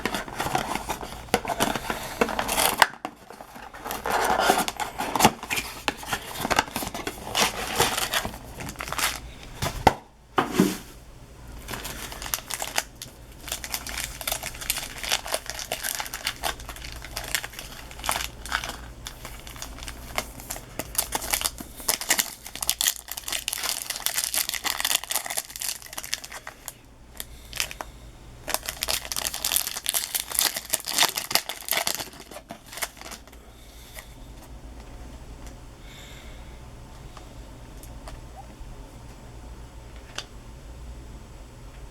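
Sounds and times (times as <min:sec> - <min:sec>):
card wrappers crinkling and tearing: 0:00.0 - 0:09.8, 0:11.6 - 0:34.2.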